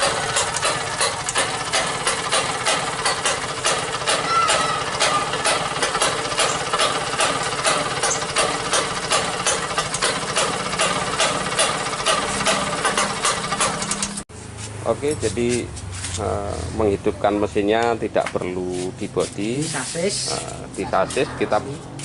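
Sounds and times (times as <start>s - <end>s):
two-stroke scooter engine running: 0.0s - 14.2s.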